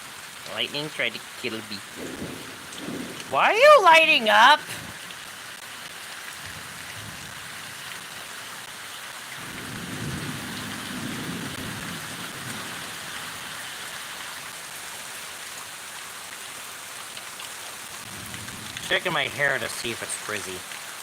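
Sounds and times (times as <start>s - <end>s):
steady rain: 0.0s - 21.0s
thunder rumbling: 1.8s - 5.5s, 6.4s - 7.6s, 9.4s - 13.1s.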